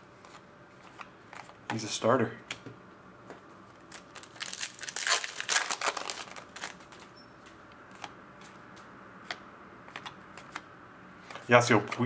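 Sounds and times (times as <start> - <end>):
cards rustling and crinkling: 0.2 - 1.8, 3.7 - 7.1.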